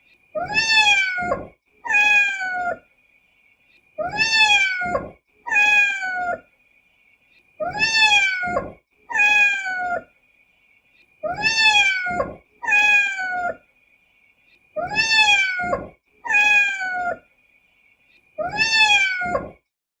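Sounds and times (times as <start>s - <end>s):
cat meowing: 0.4s - 2.8s, 4.0s - 6.4s, 7.6s - 10.1s, 11.2s - 13.6s, 14.8s - 17.2s, 18.4s - 19.6s.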